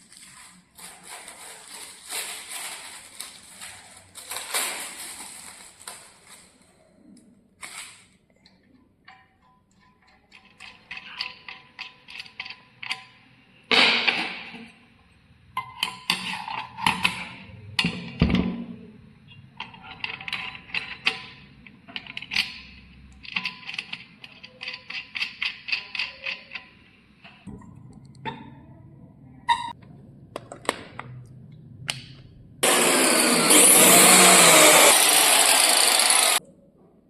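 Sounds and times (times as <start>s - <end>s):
angle grinder whining: 32.6s - 36.4s.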